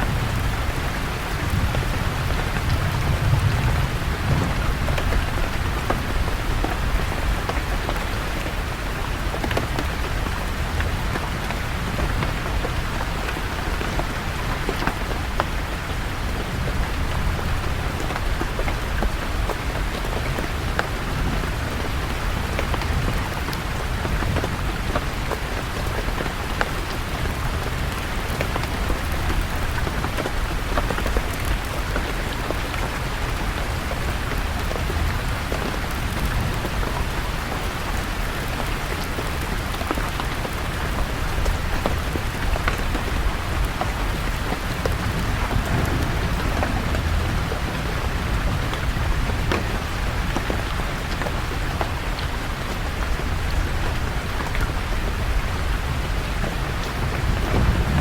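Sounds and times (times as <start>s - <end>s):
rain pattering: 0.0s - 58.0s
low rumble: 43.5s - 50.5s, 56.9s - 58.0s.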